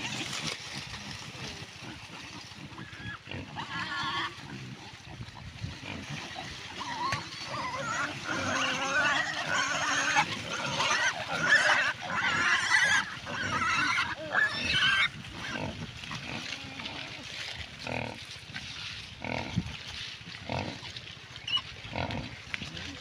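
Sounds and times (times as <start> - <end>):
small pigs squealing: 0.0 - 5.0, 5.9 - 17.2, 21.4 - 22.3.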